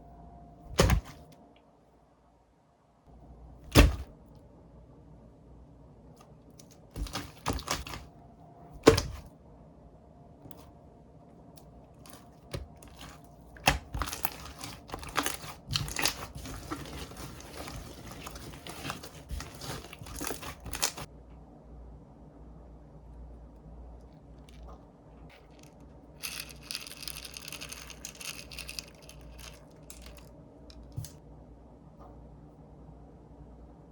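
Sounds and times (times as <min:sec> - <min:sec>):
slime clicking and crackling: 0:12.8 - 0:21.1.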